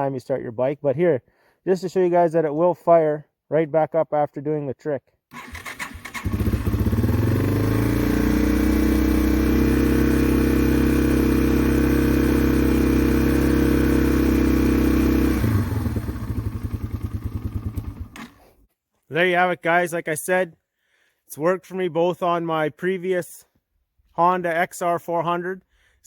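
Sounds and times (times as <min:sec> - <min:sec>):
motorcycle engine running: 0:05.4 - 0:18.4.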